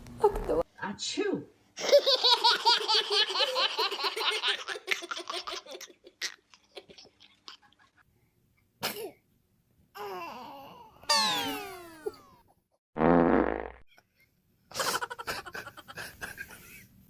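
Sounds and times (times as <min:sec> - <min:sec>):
baby giggling: 0:01.8 - 0:08.0, 0:11.0 - 0:12.4, 0:14.7 - 0:16.7.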